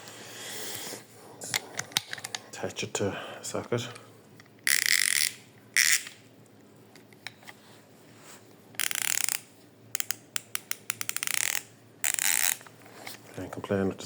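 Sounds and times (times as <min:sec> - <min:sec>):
ratchet single clicks: 0:04.7 - 0:06.2, 0:08.8 - 0:12.6
ratchet whirring: 0:04.7 - 0:06.2, 0:08.8 - 0:12.7.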